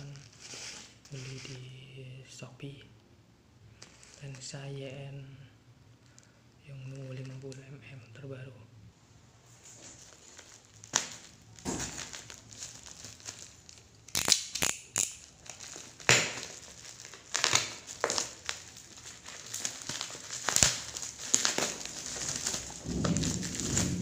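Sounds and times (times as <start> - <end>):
packaging crinkling and tearing: 9.6 - 24.0.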